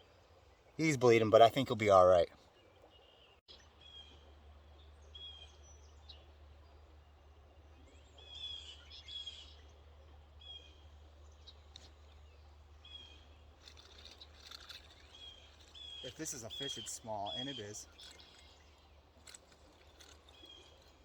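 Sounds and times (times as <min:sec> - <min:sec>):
bird chirping: 0:12.8 - 0:21.0.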